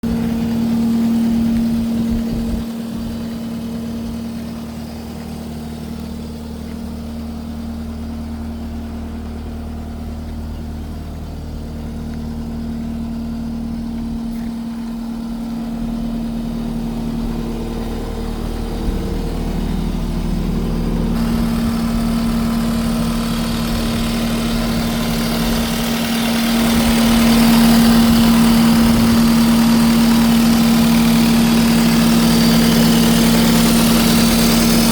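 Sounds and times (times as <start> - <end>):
diesel engine idling: 0.0 - 34.9.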